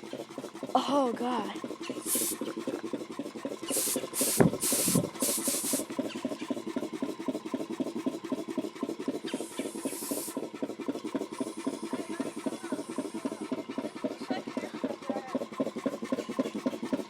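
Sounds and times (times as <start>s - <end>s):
air compressor pump chugging: 0.0s - 17.0s
hissing bursts of air: 2.0s - 2.5s, 3.6s - 5.9s, 9.3s - 10.4s.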